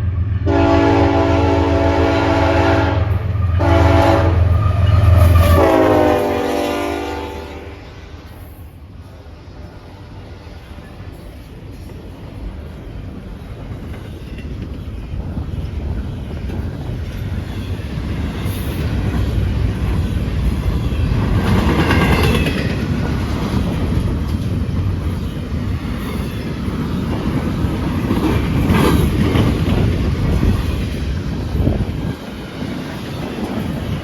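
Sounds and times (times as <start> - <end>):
freight train wheels clattering: 9.6 - 34.0.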